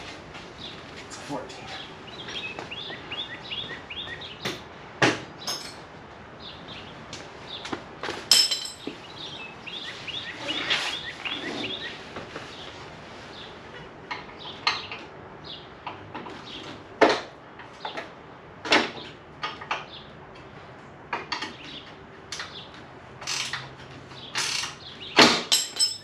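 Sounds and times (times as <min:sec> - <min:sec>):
birds chirping: 0:00.0 - 0:04.7, 0:05.3 - 0:16.8, 0:21.4 - 0:25.2
hand tools clanking on metal: 0:05.4 - 0:05.9, 0:08.3 - 0:09.0, 0:24.3 - 0:26.0.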